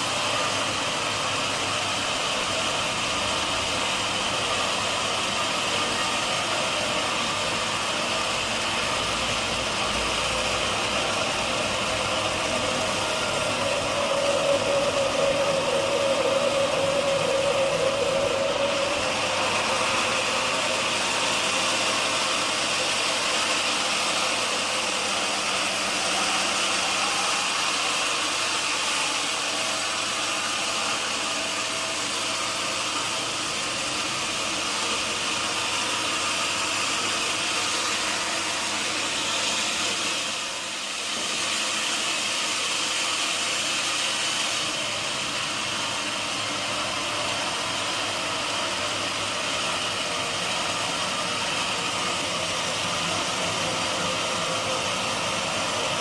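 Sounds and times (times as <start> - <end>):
sawmill machinery running: 0.0 - 56.0.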